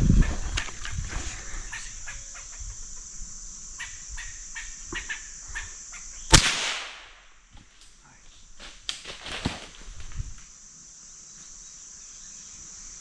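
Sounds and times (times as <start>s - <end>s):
high insect drone: 0.0s - 13.0s
squirrel barking: 1.7s - 2.7s, 3.8s - 6.3s
rifle shot: 6.3s - 7.2s.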